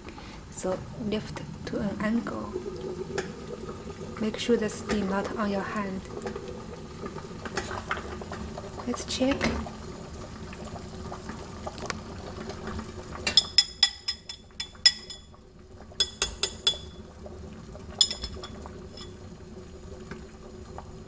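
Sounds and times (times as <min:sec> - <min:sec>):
water simmering: 0:00.0 - 0:21.0
spoon clinking on bowl: 0:13.3 - 0:15.3, 0:16.0 - 0:17.0, 0:18.0 - 0:19.2.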